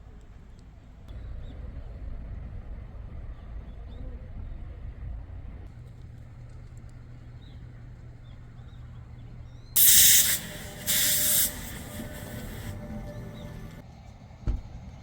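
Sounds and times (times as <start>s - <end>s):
low steady hum: 1.2s - 13.8s
short bursts of hissing: 9.8s - 13.8s.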